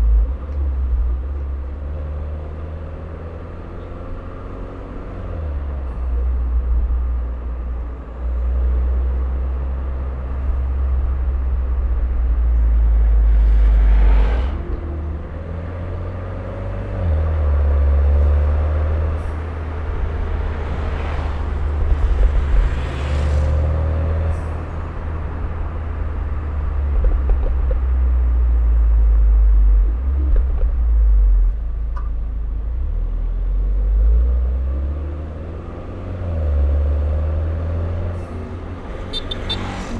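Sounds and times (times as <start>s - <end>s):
car engine and exhaust drone: 0.0s - 39.9s
turbo whoosh: 13.0s - 15.3s.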